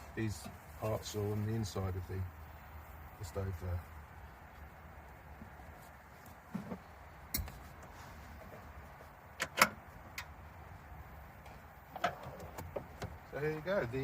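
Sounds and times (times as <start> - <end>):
clicks and knocks of metal holder: 9.4 - 10.3, 11.9 - 13.2.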